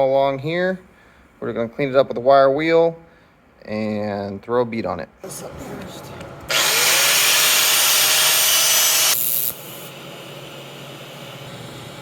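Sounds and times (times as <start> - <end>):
power tool motor whine: 6.5 - 12.0.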